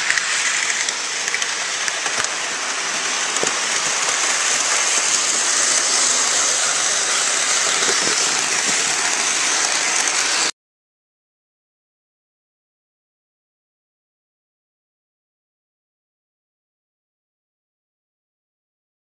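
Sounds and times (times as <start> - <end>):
model train rolling on track: 0.0 - 10.5.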